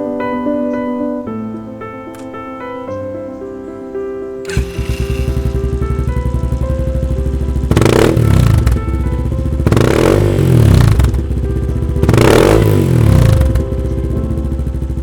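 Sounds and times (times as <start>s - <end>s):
motorcycle engine revving: 4.4s - 15.0s.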